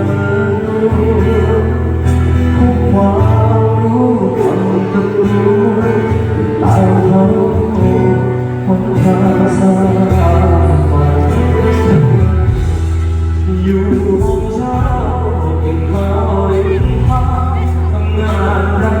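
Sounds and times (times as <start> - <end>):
guitar: 0.0 - 19.0
man singing: 0.0 - 19.0
heavy sustained bass line: 9.7 - 19.0.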